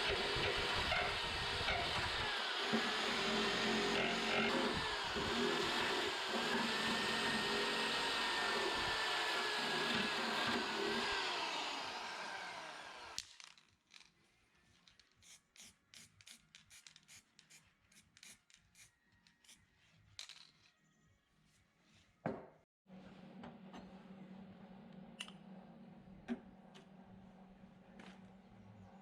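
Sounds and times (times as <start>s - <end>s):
power tool whining: 0.0s - 13.2s
knock: 22.3s - 22.6s.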